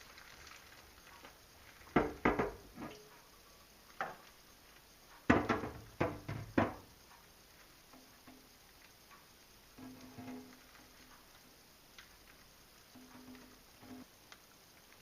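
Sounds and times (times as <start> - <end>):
knocks of hard objects handled: 5.3 - 6.8.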